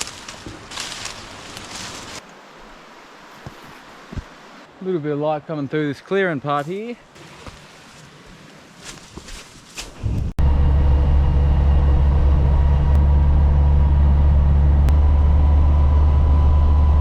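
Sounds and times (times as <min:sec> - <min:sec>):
vehicle interior rumble: 0:10.1 - 0:17.0.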